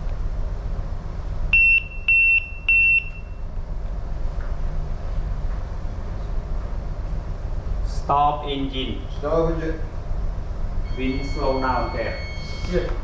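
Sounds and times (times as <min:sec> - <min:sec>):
low ship hum: 0:00.0 - 0:13.0
high electronic beeps: 0:10.8 - 0:13.0.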